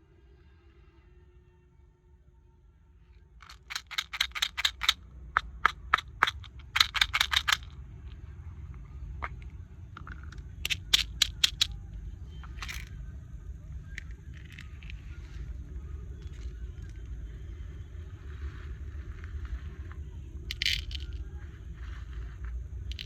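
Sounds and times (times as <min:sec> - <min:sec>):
sharp clicks of small objects: 0:03.4 - 0:07.8, 0:09.2 - 0:11.8, 0:12.4 - 0:13.0, 0:20.5 - 0:21.2.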